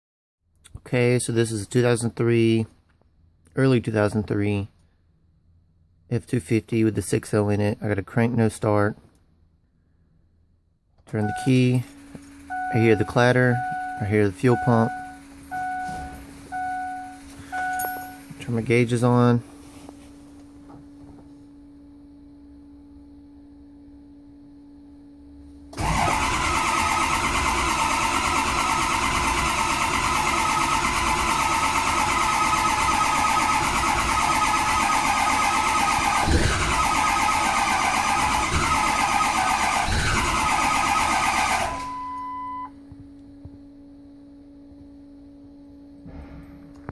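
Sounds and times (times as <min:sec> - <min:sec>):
faint steady hum: 0:00.6 - 0:25.8, 0:41.1 - 0:46.9
short beep: 0:11.1 - 0:11.9, 0:12.5 - 0:18.4, 0:41.8 - 0:42.8
diesel engine cranking: 0:11.1 - 0:19.0, 0:25.7 - 0:42.0.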